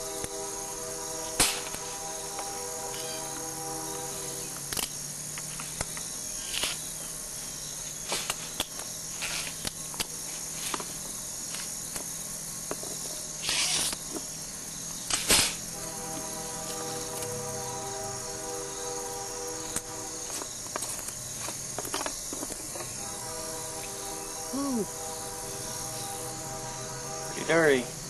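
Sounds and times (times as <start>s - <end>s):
high background hum: 0.0s - 28.0s
hand tools scraping: 8.0s - 9.7s.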